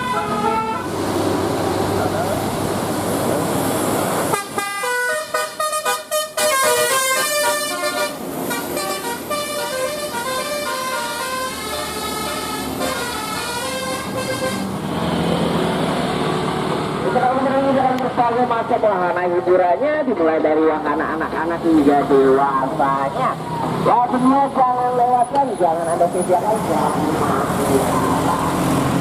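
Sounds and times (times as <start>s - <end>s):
musical air horn melody: 0.0s - 0.9s, 4.3s - 14.7s
street noise: 0.0s - 29.0s.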